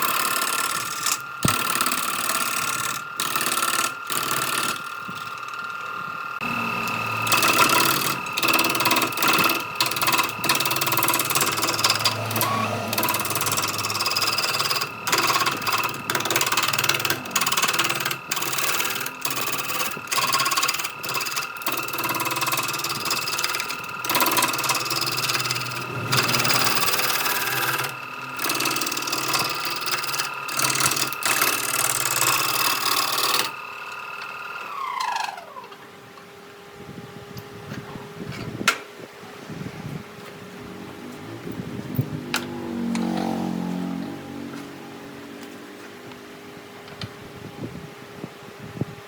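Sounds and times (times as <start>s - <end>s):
grinding wood: 0.0s - 35.8s
power tool whining: 0.0s - 48.8s.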